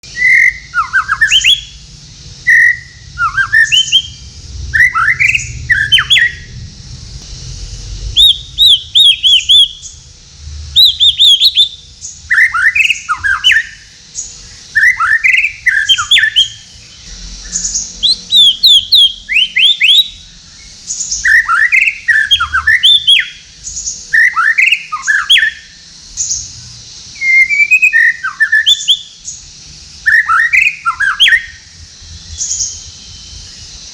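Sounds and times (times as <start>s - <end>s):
bird singing whistled phrases: 0.0s - 1.8s, 2.5s - 6.5s, 8.2s - 10.0s, 10.8s - 25.8s, 27.2s - 29.4s, 30.0s - 33.6s.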